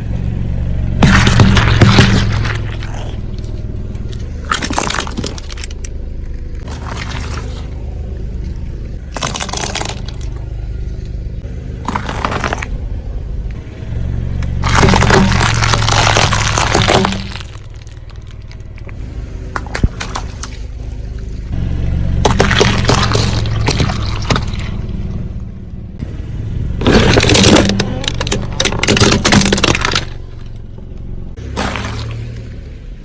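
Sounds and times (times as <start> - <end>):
low car engine hum: 0.0 - 33.0
tyre crushing brittle objects: 1.0 - 5.9, 9.1 - 10.4, 14.6 - 18.8, 22.2 - 24.8, 26.8 - 30.7.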